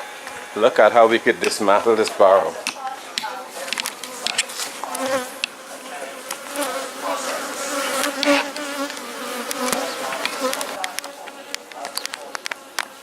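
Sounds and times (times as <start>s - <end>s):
bees buzzing in a swarm: 3.8s - 13.0s
faint clicks: 8.0s - 13.0s.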